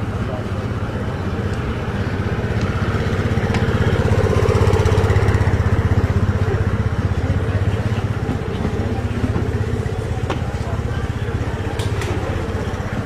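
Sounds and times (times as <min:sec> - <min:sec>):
engine running: 0:00.0 - 0:13.0.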